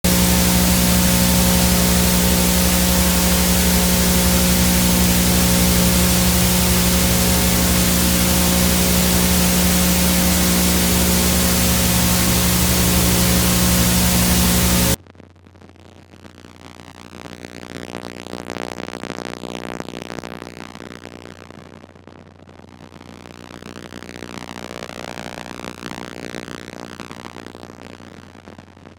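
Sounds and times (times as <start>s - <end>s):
faint tones: 0.0s - 15.0s
low hum: 0.0s - 15.0s
tape static hiss: 0.0s - 15.0s.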